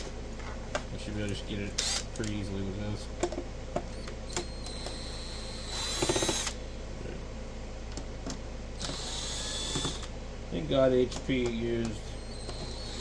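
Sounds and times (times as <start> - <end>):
power screwdriver whining: 4.4 - 6.6, 8.8 - 10.1, 12.2 - 13.0.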